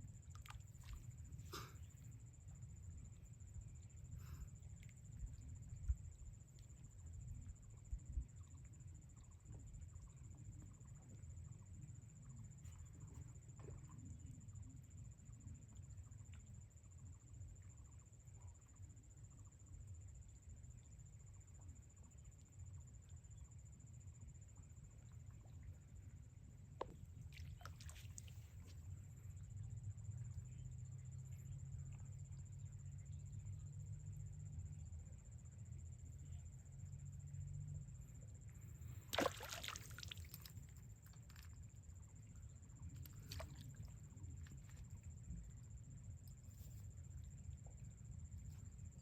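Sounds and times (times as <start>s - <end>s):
faint low rumble: 0.0s - 49.0s
low steady hum: 0.0s - 49.0s
water sloshing and splashing: 26.9s - 28.9s, 38.9s - 41.8s, 42.8s - 45.1s.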